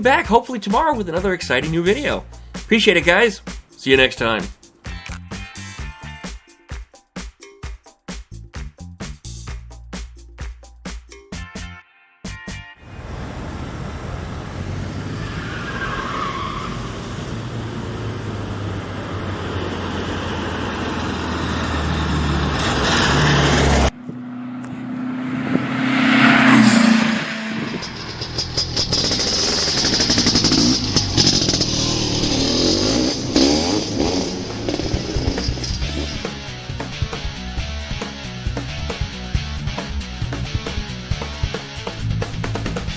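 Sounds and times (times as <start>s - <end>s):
vehicle engine droning: 1.0s - 6.0s, 12.8s - 42.9s
quick rattling: 27.6s - 36.4s.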